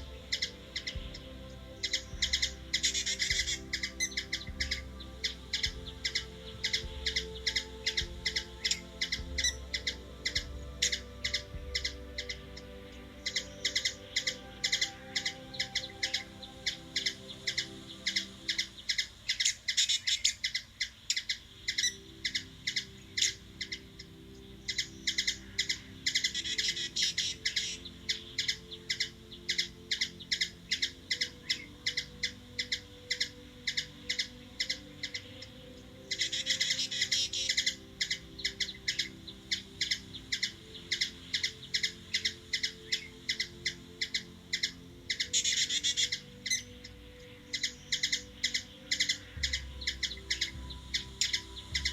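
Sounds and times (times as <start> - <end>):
bird chirping: 0.0 - 51.9.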